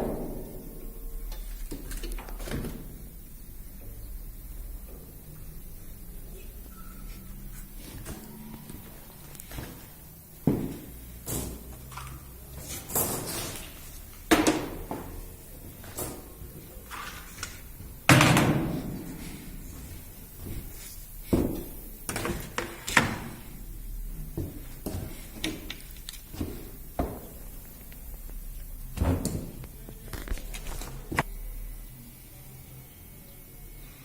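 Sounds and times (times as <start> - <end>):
welding machine knocks and clunks: 0.0 - 3.0, 12.9 - 16.2, 17.8 - 19.3.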